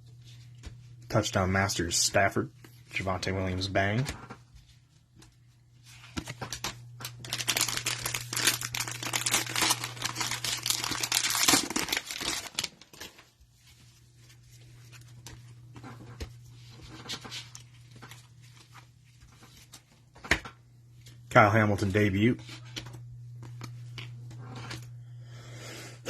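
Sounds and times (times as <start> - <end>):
cards rustling: 1.8 - 20.3
wrapper crinkling: 6.5 - 13.3.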